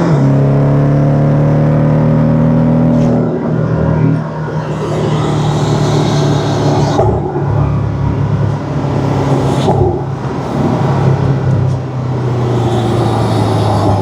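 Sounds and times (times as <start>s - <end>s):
car engine drone: 0.0s - 14.0s.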